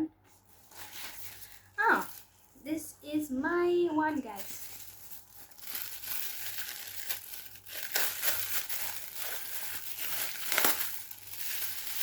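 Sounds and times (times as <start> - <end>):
packaging crinkling: 4.3 - 12.0.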